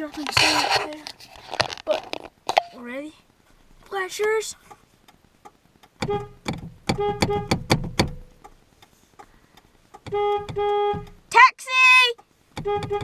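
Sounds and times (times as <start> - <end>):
car horn honking: 6.0 - 7.7, 10.1 - 11.5, 12.6 - 13.0.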